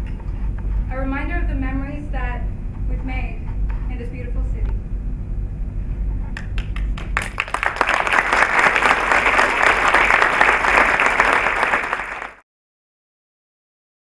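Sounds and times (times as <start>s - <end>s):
audience applauding: 6.4s - 12.4s.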